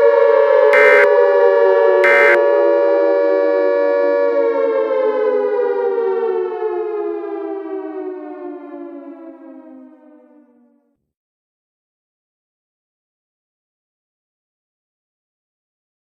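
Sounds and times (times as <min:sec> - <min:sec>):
warning siren winding down: 0:00.0 - 0:10.4.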